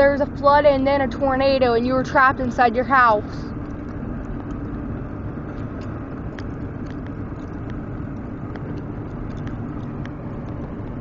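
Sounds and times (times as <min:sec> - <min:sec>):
car engine and road noise: 0:00.0 - 0:11.0
faint ticks: 0:05.5 - 0:11.0.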